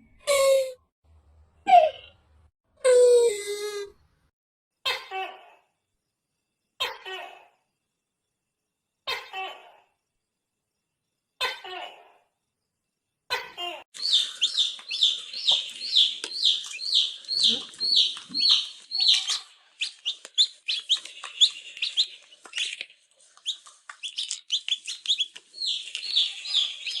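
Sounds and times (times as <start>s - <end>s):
animal chirping and clicking: 14.0s - 27.0s.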